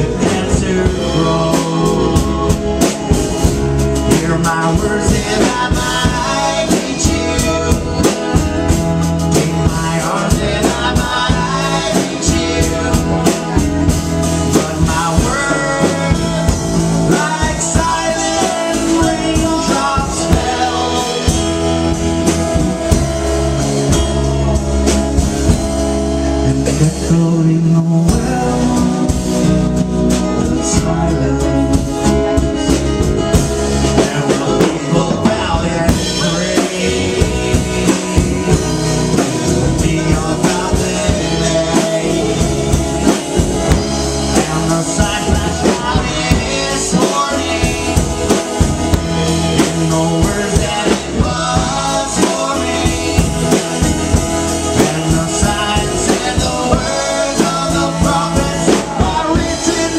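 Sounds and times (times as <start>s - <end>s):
drum kit beat: 0.0s - 59.9s
guitar: 0.0s - 59.9s.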